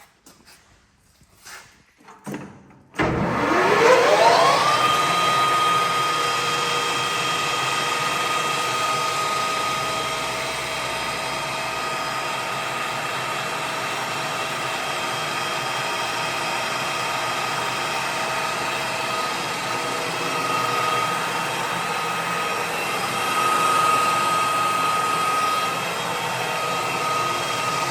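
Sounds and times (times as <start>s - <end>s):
metal lathe whining: 3.0s - 27.9s.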